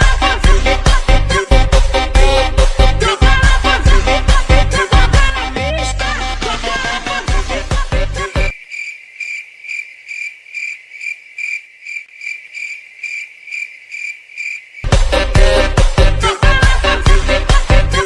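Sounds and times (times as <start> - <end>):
music: 0.0 - 8.6, 14.8 - 18.0
cricket chirping: 8.5 - 14.9.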